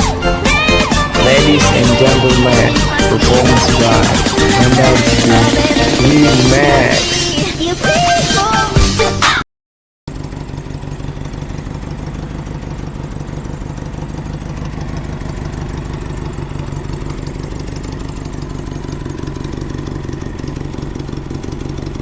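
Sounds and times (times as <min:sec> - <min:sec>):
engine idling: 0:00.0 - 0:09.4, 0:10.1 - 0:22.0.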